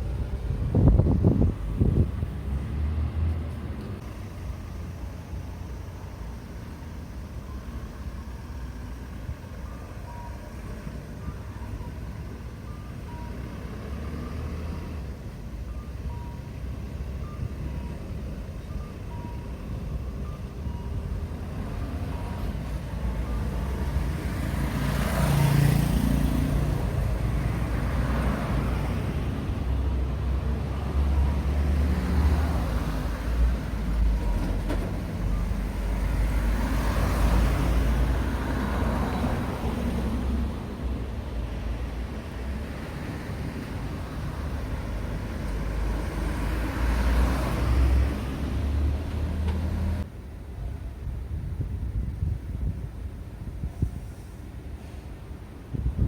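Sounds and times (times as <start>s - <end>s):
vehicle passing close by: 0.0s - 4.0s, 23.8s - 33.5s, 41.8s - 50.0s
traffic rumble: 0.0s - 56.0s.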